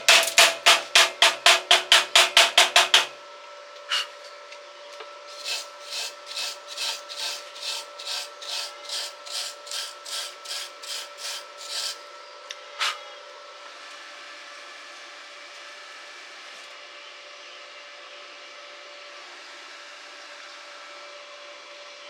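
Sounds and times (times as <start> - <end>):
hand tool scraping metal: 0.0 - 3.1, 5.3 - 12.0.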